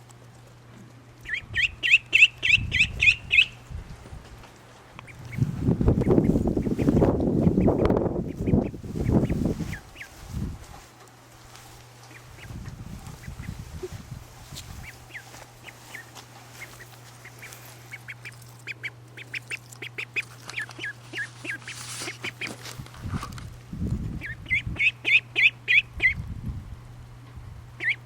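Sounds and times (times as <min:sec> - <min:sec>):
duckling peeping: 0:01.2 - 0:03.8, 0:05.0 - 0:10.6, 0:11.9 - 0:22.8, 0:23.9 - 0:26.3, 0:27.8 - 0:28.0.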